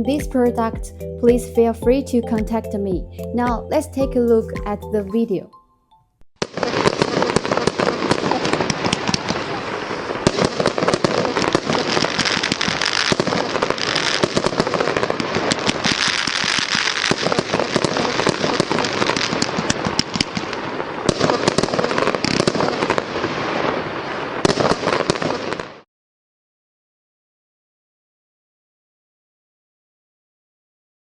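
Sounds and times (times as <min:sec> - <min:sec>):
dense crackle: 0:06.4 - 0:25.8
fireworks cake firing: 0:06.4 - 0:25.9.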